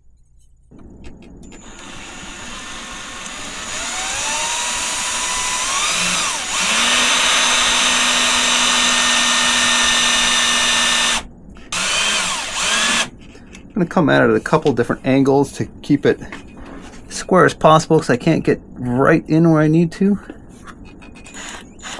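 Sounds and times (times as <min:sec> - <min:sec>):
power drill boring metal: 0:01.6 - 0:13.1, 0:21.3 - 0:21.9.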